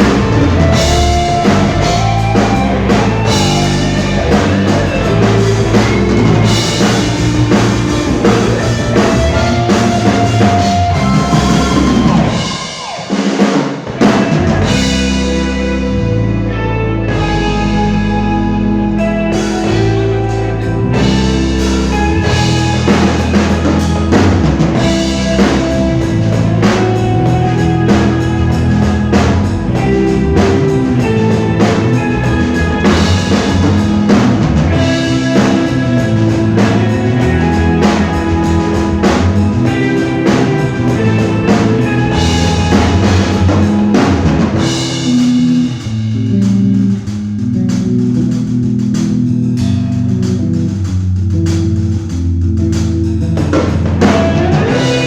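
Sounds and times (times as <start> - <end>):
drum beat: 0.0 - 15.1, 21.1 - 47.2, 53.4 - 55.0
live pop-rock band: 0.0 - 55.0.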